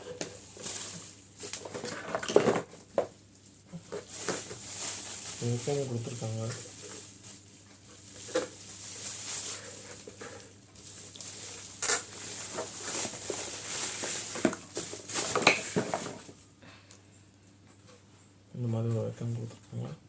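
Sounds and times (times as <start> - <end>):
packaging rustling and crinkling: 0.0 - 16.4.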